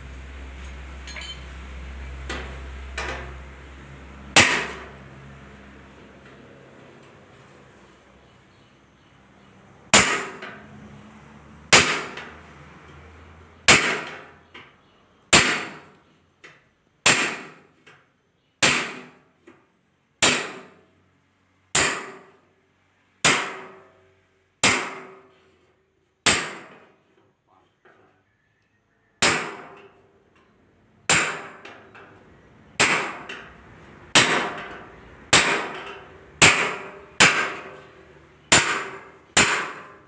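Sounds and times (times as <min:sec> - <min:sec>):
hammer striking sheet metal: 0:04.4 - 0:04.9, 0:10.0 - 0:10.5, 0:11.8 - 0:12.2, 0:31.1 - 0:31.8, 0:32.8 - 0:33.5, 0:34.1 - 0:40.0.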